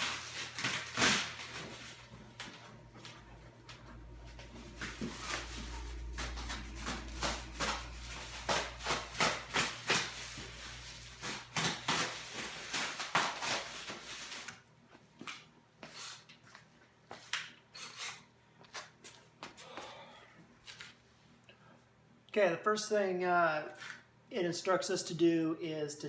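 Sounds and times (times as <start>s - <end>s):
packaging being handled: 0.0s - 14.6s.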